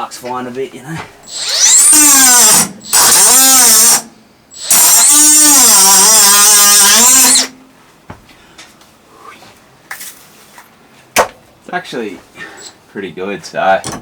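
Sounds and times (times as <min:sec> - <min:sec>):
angle grinder grinding metal: 0:01.2 - 0:07.6.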